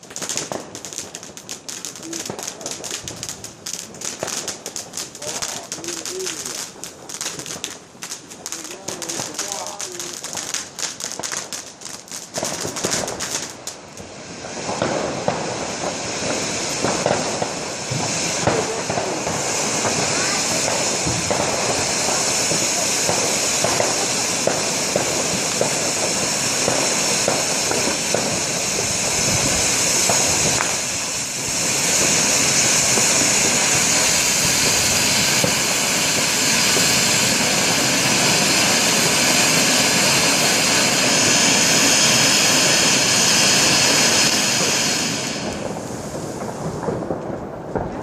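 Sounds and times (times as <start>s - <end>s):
fireworks hissing: 0.0s - 48.0s
fireworks popping: 0.0s - 48.0s.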